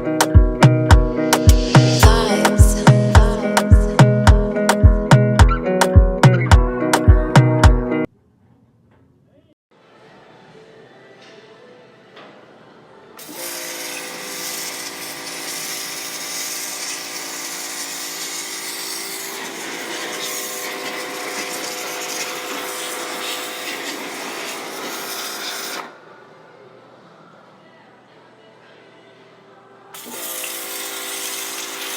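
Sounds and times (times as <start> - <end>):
pressure washer running: 13.2 - 25.9, 30.0 - 31.9.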